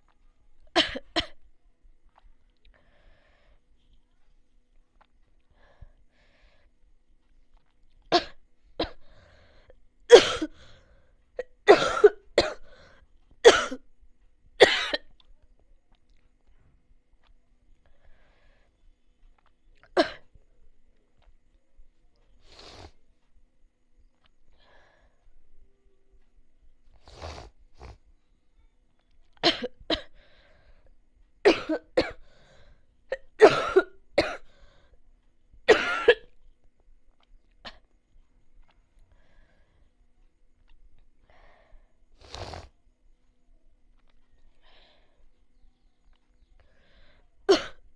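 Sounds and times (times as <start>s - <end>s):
person coughing: 47.5s - 47.8s.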